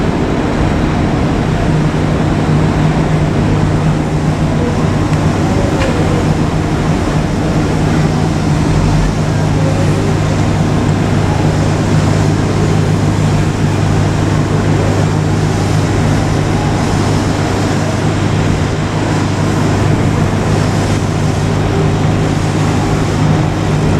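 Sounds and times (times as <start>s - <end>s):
low engine hum: 0.0s - 23.9s
rushing noise: 0.0s - 23.9s.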